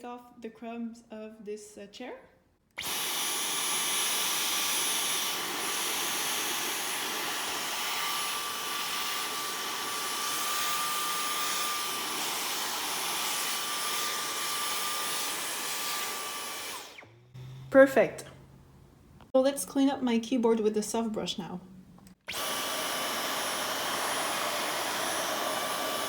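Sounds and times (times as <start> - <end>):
cordless vacuum whirring: 2.8 - 17.8, 22.0 - 26.0.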